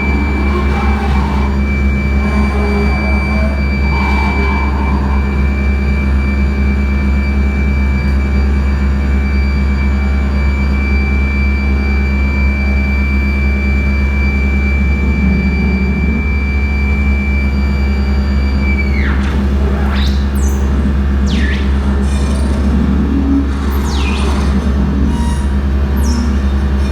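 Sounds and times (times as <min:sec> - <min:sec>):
high whistling tone with sweeps: 0:00.0 - 0:07.8, 0:15.0 - 0:26.9
low drone and rumble: 0:00.0 - 0:09.1, 0:14.7 - 0:26.9.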